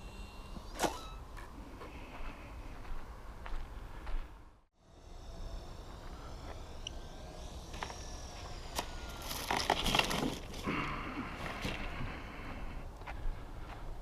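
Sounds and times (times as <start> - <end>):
model plane motor whining: 0.0 - 1.5, 4.8 - 12.8
crash crunching and crackling: 9.2 - 10.8.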